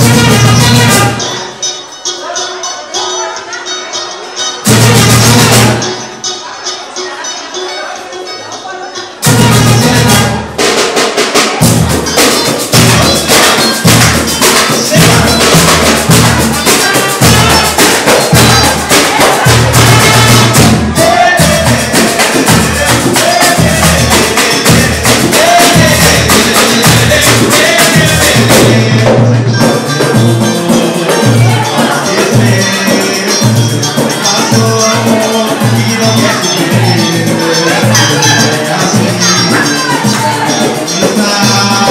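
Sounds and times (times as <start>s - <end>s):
drums: 0.0s - 1.6s, 4.6s - 6.1s, 9.2s - 41.9s
hand percussion: 0.0s - 41.9s
pulsing bass beat: 11.6s - 40.5s.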